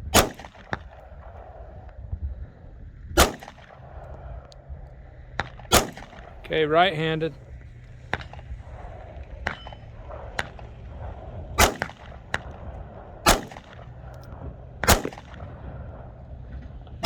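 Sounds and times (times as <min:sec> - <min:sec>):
pistol shots: 0:00.0 - 0:01.3, 0:03.2 - 0:04.1, 0:05.4 - 0:06.4, 0:11.6 - 0:15.6.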